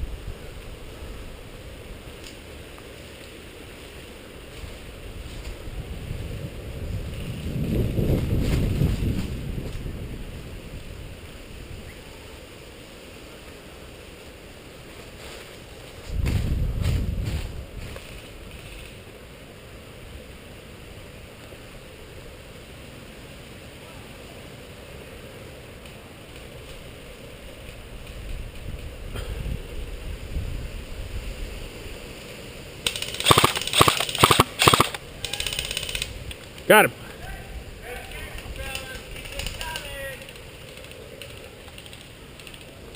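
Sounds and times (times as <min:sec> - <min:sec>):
steady hiss: 0:00.0 - 0:42.9
airsoft rifle bursts: 0:32.9 - 0:36.1.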